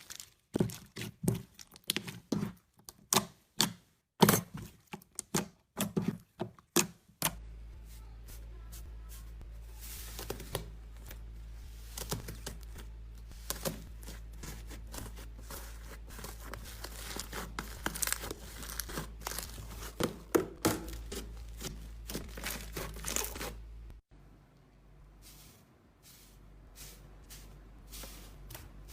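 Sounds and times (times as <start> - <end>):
low hum: 7.4 - 16.8
slime crackling and popping: 16.2 - 20.0.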